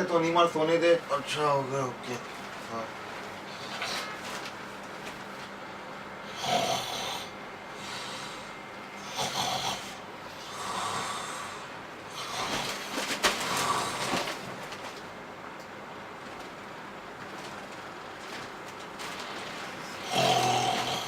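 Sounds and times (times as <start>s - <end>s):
person snoring: 6.3s - 14.3s, 19.8s - 21.0s.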